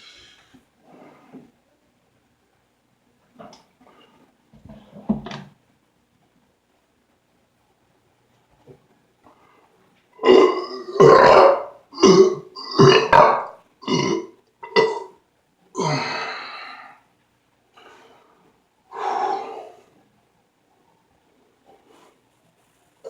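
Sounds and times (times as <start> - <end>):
man belching loudly: 10.2 - 15.2, 15.8 - 16.5.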